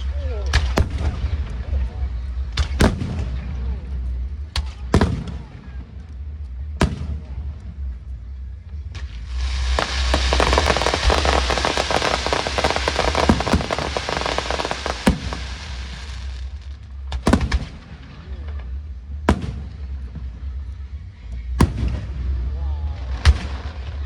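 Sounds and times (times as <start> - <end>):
fireworks crackling: 0.0 - 24.0
firework bangs with echoes: 0.5 - 8.0, 8.9 - 20.6, 21.5 - 24.0.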